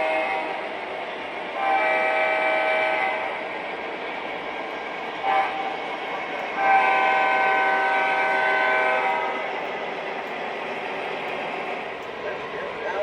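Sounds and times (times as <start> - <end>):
model train running on track: 0.0 - 13.0
model train horn blasts: 1.6 - 3.4, 5.2 - 5.7, 6.6 - 9.5.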